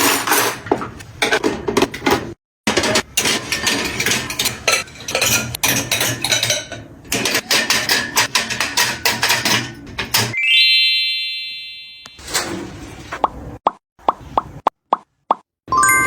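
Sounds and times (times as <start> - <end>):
kitchen items clattering: 0.0 - 10.4.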